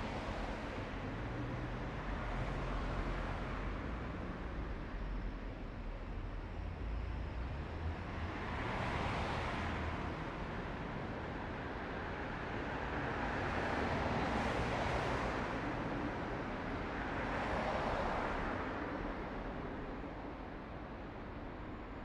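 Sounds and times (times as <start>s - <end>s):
car road and tyre noise: 0.0s - 22.0s.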